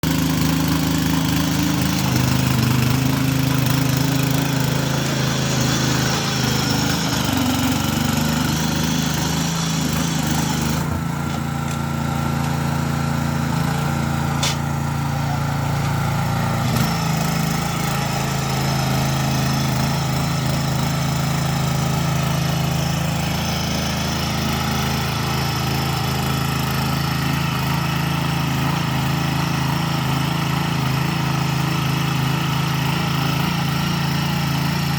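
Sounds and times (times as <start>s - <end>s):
motor tiller engine running: 0.0s - 34.9s
sharp click: 14.4s - 14.7s.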